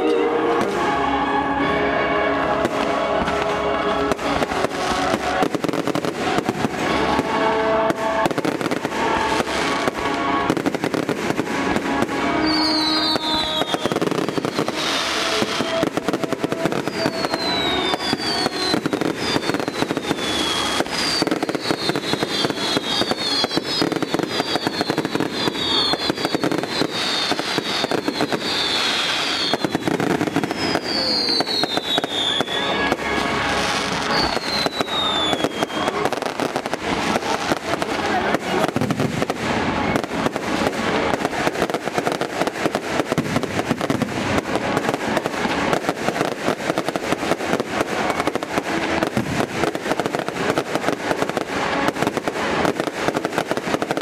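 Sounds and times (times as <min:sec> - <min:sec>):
fireworks crackling and popping: 0:00.0 - 0:54.0
music: 0:00.0 - 0:54.0
falling firework whistles: 0:08.2 - 0:38.0.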